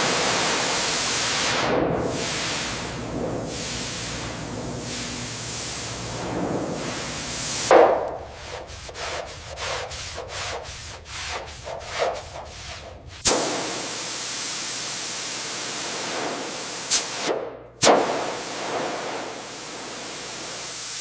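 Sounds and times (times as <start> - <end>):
steady spraying hiss: 0.0 - 21.0
rubbing strokes on a surface: 2.1 - 13.3
sharp swish: 7.6 - 13.6.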